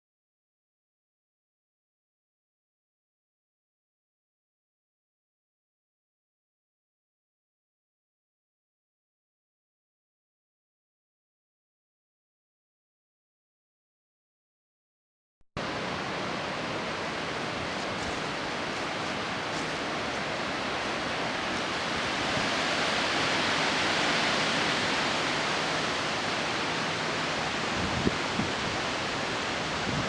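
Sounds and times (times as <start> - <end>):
high winds through trees: 15.6 - 30.0
wind buffeting microphone: 15.8 - 30.0.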